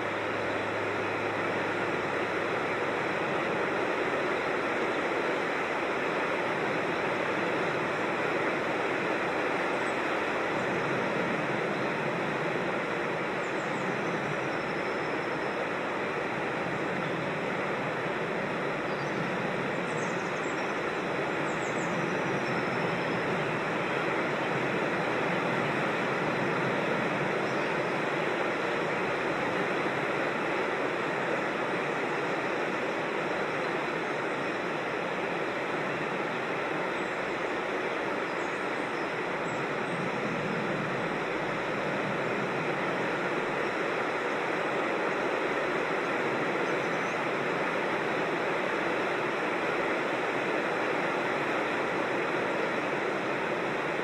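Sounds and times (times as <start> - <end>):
water rushing over rocks: 20.8 - 54.0.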